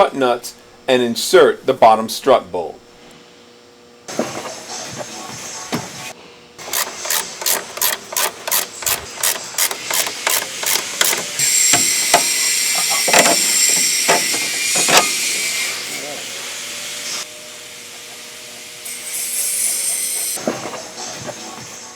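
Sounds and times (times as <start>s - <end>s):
wrench ratcheting: 6.6s - 15.3s
air tool hissing: 6.6s - 20.4s
sharp metal knocks: 6.8s - 15.4s.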